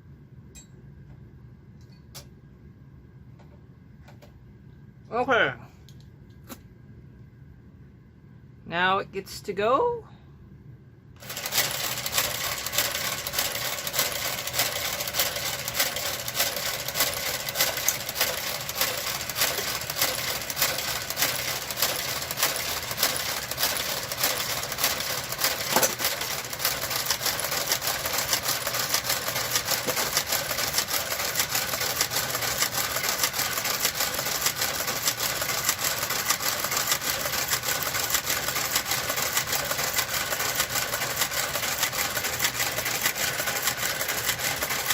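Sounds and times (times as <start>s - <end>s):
knitting machine carriage clattering: 11.2s - 44.9s.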